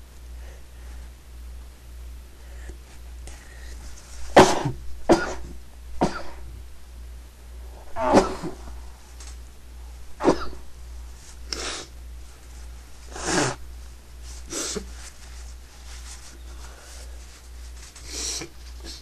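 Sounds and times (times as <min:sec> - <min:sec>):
person stifling sneezes: 0:04.4 - 0:06.4, 0:07.9 - 0:08.7, 0:10.2 - 0:10.7, 0:13.1 - 0:13.6, 0:14.4 - 0:15.0.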